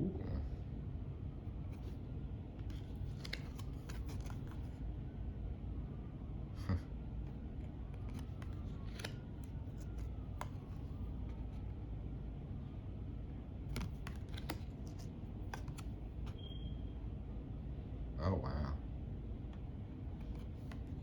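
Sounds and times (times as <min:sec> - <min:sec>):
cards clicking and tapping: 0:02.6 - 0:04.8, 0:07.9 - 0:11.6, 0:13.7 - 0:16.4, 0:20.2 - 0:21.0.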